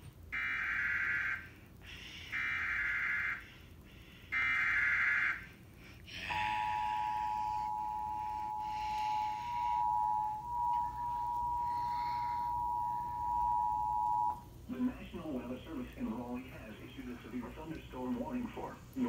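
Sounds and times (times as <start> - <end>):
two-tone attention signal: 6.3 - 14.4.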